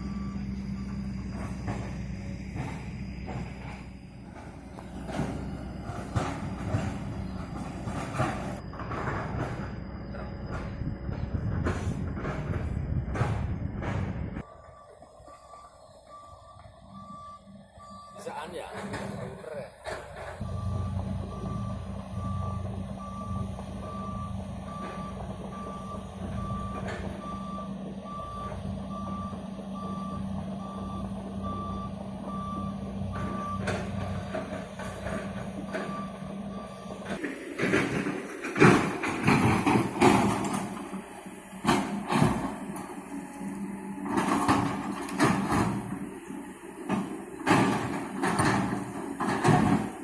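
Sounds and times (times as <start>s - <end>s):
backup alarm beeping: 0.0s - 19.8s, 20.4s - 37.2s
heavy machine engine running: 0.0s - 50.0s
clattering and knocking: 2.6s - 14.4s.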